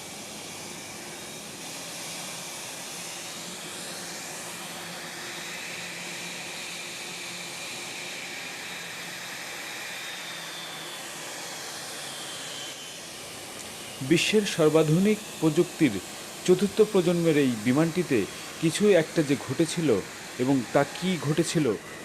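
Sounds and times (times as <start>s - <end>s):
jet turbine whine and rush: 0.0s - 22.0s.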